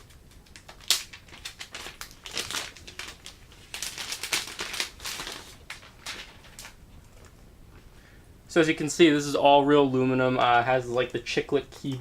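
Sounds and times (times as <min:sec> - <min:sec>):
packaging crinkling and rustling: 0:00.0 - 0:07.4.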